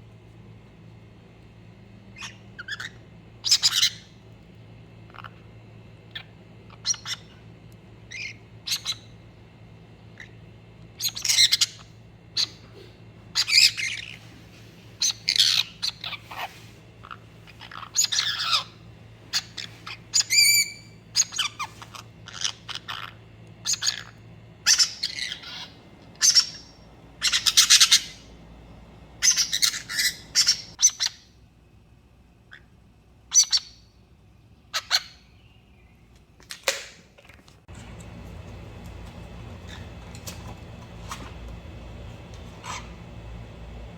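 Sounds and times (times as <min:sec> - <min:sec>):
birds squawking and chirping: 0:02.2 - 0:04.2, 0:06.1 - 0:07.4, 0:08.1 - 0:09.2, 0:11.0 - 0:31.3, 0:33.3 - 0:33.9, 0:34.7 - 0:35.9, 0:39.4 - 0:41.4, 0:42.4 - 0:43.2.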